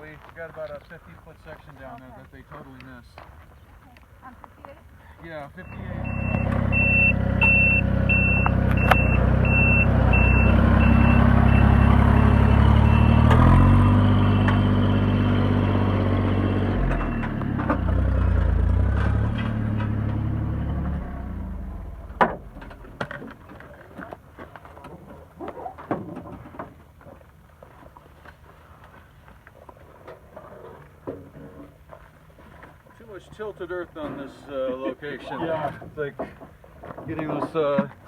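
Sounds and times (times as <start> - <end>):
backup alarm beeping: 5.6 - 15.2, 16.3 - 17.6
vehicle engine running: 5.6 - 24.4.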